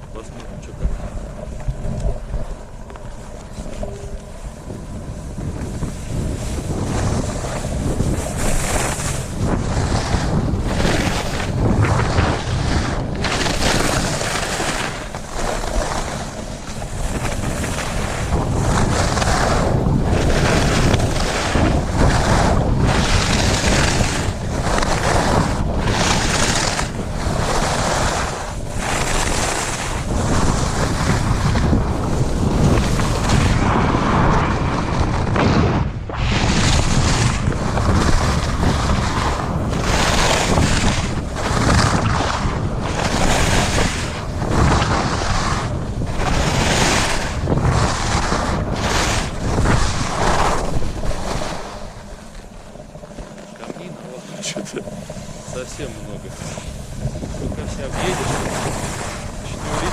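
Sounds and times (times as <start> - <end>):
ski edges scraping snow: 0.0 - 59.9
wind on microphone: 0.0 - 59.9.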